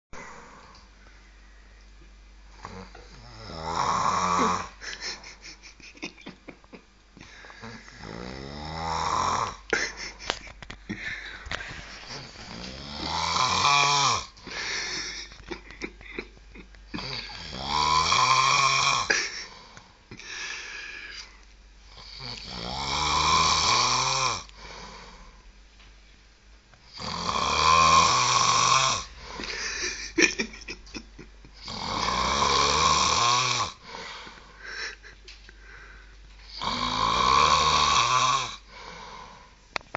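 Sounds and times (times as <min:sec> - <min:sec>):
man snoring: 0:02.6 - 0:04.9, 0:07.6 - 0:10.2, 0:12.1 - 0:15.3, 0:16.9 - 0:19.7, 0:21.9 - 0:25.3, 0:26.9 - 0:30.1, 0:31.6 - 0:34.3, 0:36.5 - 0:39.4.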